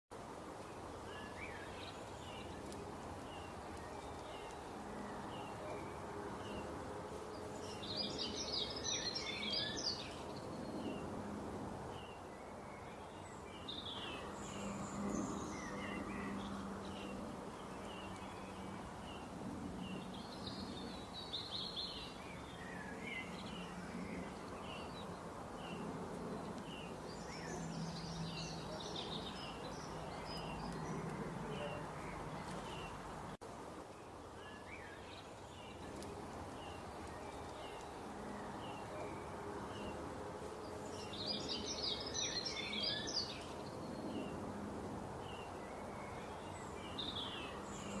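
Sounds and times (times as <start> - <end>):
birds chirping and singing: 1.1 - 11.1, 40.9 - 44.3.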